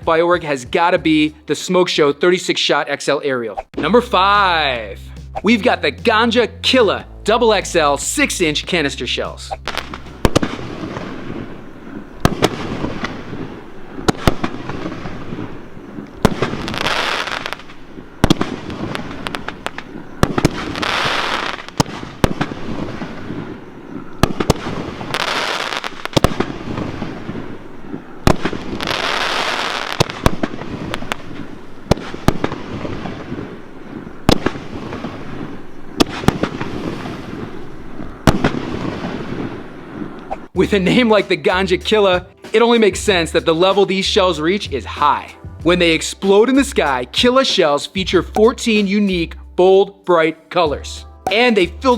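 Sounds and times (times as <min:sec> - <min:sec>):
firework hissing and crackling: 0:09.6 - 0:23.5, 0:24.3 - 0:27.5, 0:28.3 - 0:33.6, 0:34.3 - 0:40.1
firework booms: 0:09.6 - 0:23.6, 0:24.2 - 0:27.6, 0:28.2 - 0:33.6, 0:34.2 - 0:40.0.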